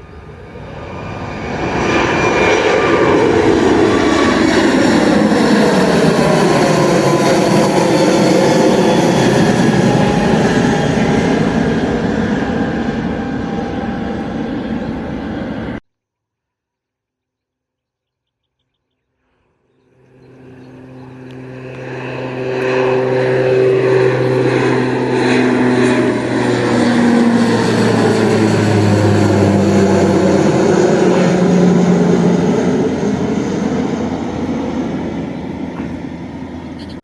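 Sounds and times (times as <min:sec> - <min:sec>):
turboprop plane engine drone: 0:00.0 - 0:15.8, 0:19.8 - 0:37.0.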